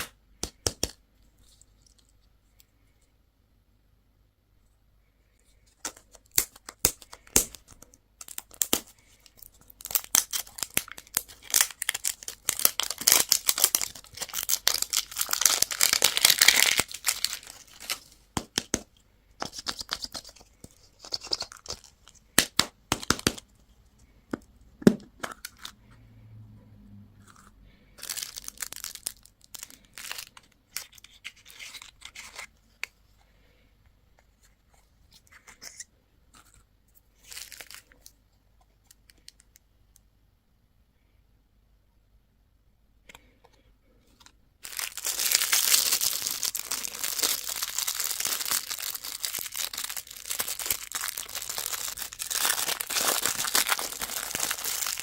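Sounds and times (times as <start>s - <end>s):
packaging crinkling: 5.8s - 18.1s, 28.0s - 32.5s, 37.2s - 38.0s, 44.6s - 55.0s
wrappers tearing: 9.8s - 18.0s, 28.0s - 31.6s, 44.6s - 55.0s.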